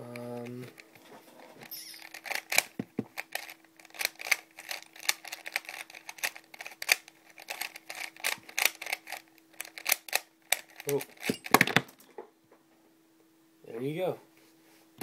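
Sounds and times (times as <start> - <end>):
faint steady hum: 0.0 - 15.0
puzzle cube clicking: 1.6 - 11.3.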